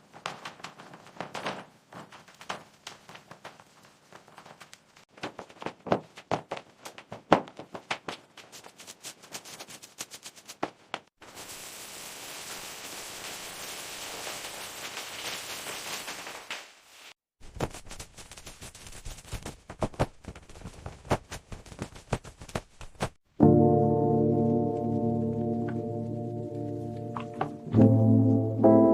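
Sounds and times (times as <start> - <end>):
steady hissing noise: 11.2 - 19.4
knocks and taps: 27.1 - 27.8.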